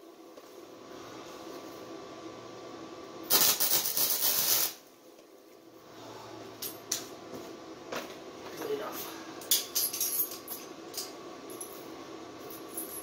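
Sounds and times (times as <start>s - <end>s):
electric welder crackling hiss: 3.2s - 5.0s.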